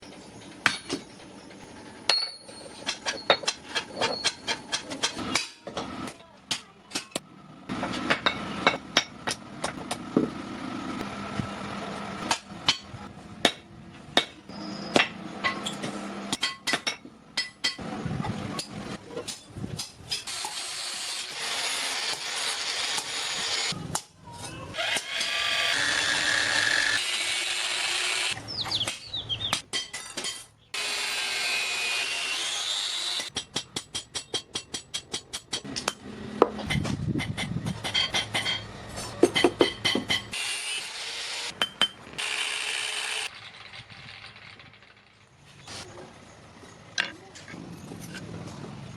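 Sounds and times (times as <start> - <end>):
noisy tool work on metal: 14.2 - 24.1, 24.7 - 28.4, 29.7 - 45.4.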